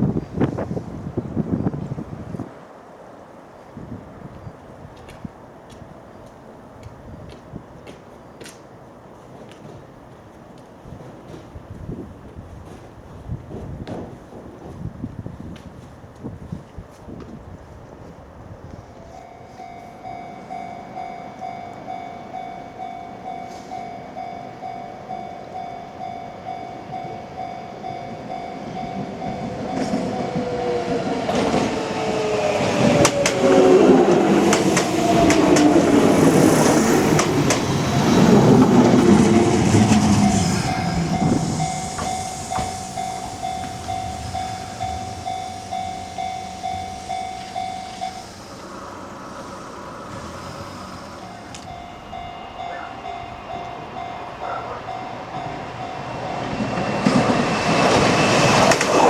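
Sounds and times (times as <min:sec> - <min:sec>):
electric train passing: 0:17.4 - 0:59.0
level crossing alarm ringing: 0:19.1 - 0:49.7, 0:50.9 - 0:59.0
wheels clattering over rail joints: 0:28.3 - 0:59.0.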